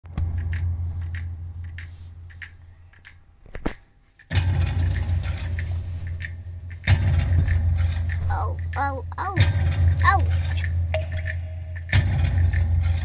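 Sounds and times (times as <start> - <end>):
crisp percussion hits: 4.3 - 13.0
music with heavy bass: 6.8 - 13.0.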